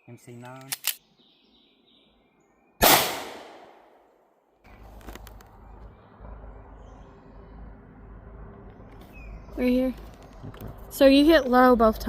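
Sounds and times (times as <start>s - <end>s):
pistol shot echoing: 2.8s - 4.1s
low rumble: 4.7s - 12.0s.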